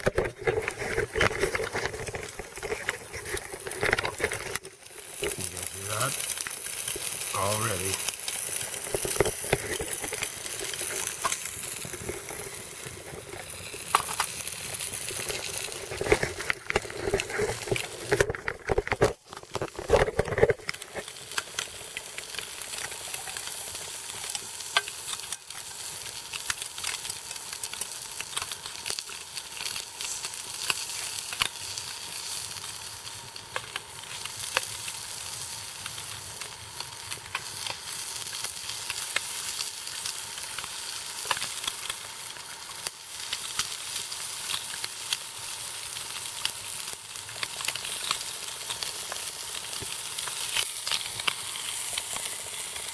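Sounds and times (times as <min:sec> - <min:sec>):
utensil scraping a pot: 0:00.0 - 0:05.5, 0:08.5 - 0:21.1
food sizzling in a pot: 0:00.0 - 0:52.9.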